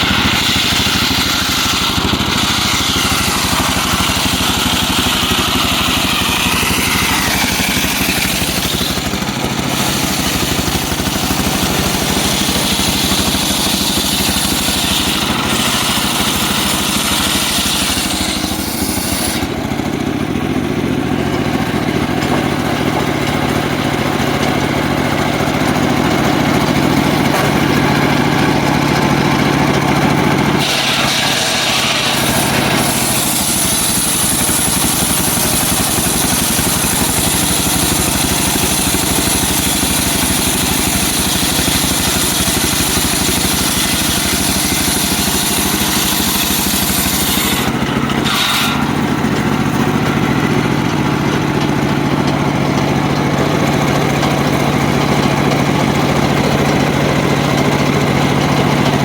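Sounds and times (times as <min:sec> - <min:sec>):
saw blade cutting log: 0:00.0 - 0:59.0
sawmill engine running: 0:00.0 - 0:59.0.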